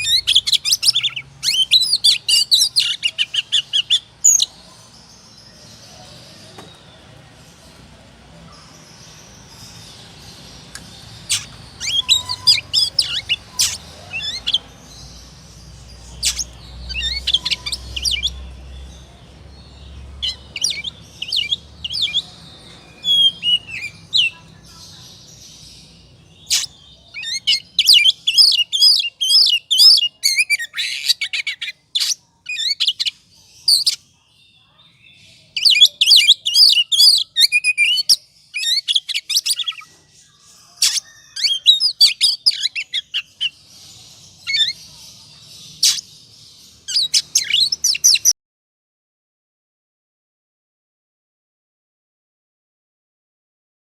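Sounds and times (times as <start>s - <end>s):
bird singing chirps and whistles: 0.0s - 4.5s, 10.7s - 14.6s, 20.2s - 24.4s, 26.4s - 34.0s, 35.5s - 39.9s, 40.5s - 43.5s, 46.9s - 48.3s.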